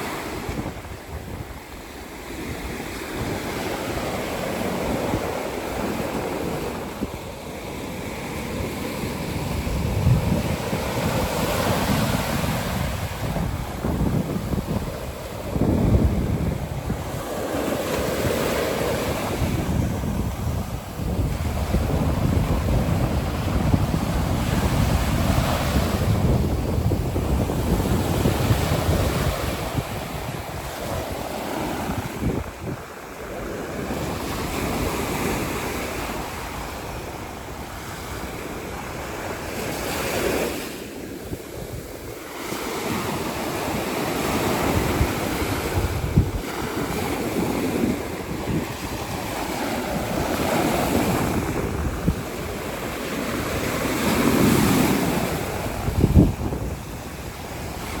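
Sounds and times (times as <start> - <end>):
surf breaking on beach: 0.0 - 58.0
wind rumbling on microphone: 0.0 - 58.0.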